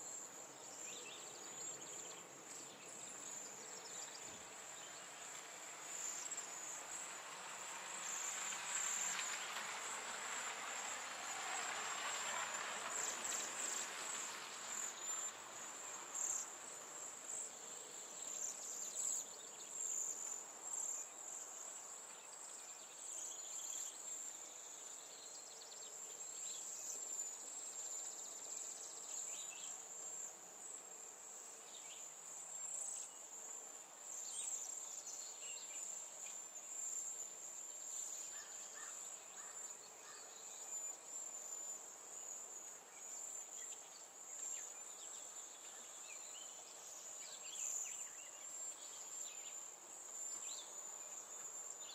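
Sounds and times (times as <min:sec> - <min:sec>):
insects trilling: 0:26.4 - 0:51.9.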